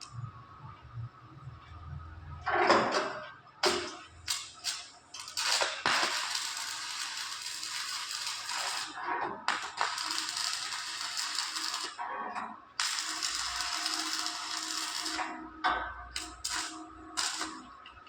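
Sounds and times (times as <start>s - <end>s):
welding arc crackling and sizzling: 3.6s - 12.0s, 12.7s - 18.0s
welding arc striking clicks: 3.6s - 12.0s, 12.8s - 15.3s, 16.1s - 18.0s.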